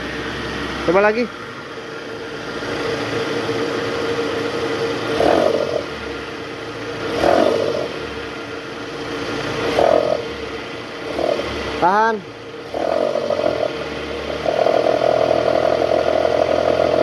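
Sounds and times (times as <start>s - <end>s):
car engine revving: 0.0s - 17.0s
drive-belt tensioner growling: 11.0s - 17.0s.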